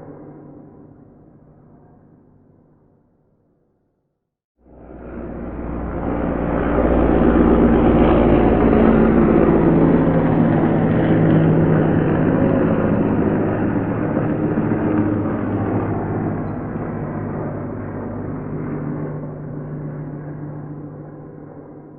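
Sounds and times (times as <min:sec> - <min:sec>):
helicopter passing by: 0:04.6 - 0:21.9.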